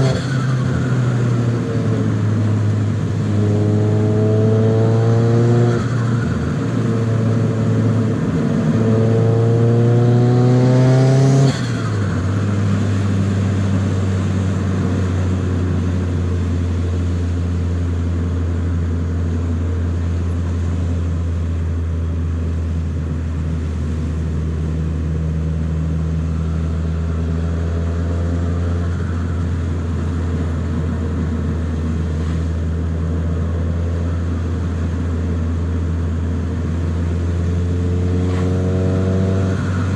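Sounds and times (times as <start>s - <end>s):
car engine pulling hard: 0.0s - 39.9s.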